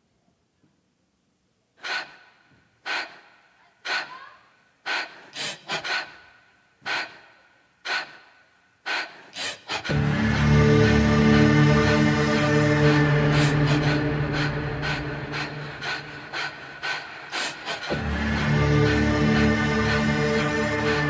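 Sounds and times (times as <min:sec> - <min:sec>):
echoing gasps for breath: 0:01.8 - 0:21.0
loud music: 0:09.9 - 0:16.8, 0:17.9 - 0:21.0.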